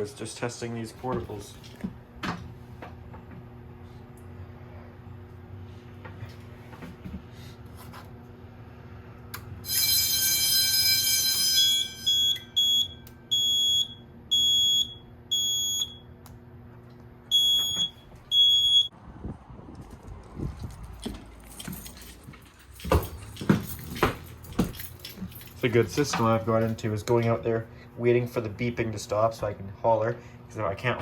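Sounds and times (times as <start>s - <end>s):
harsh buzzing alarm tone: 9.6s - 16.1s, 17.3s - 18.9s.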